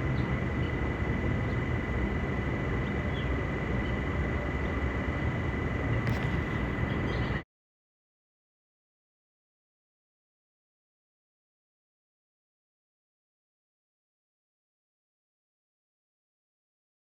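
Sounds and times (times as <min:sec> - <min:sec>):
food cooking rumble and hiss: 0:00.0 - 0:07.4
thin high whine: 0:00.0 - 0:07.4.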